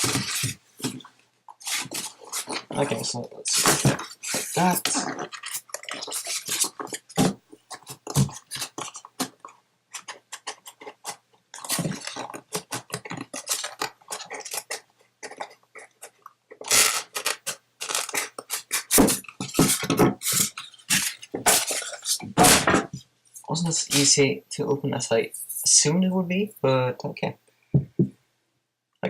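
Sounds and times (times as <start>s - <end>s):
packaging crackling and rustling: 0.0s - 23.0s.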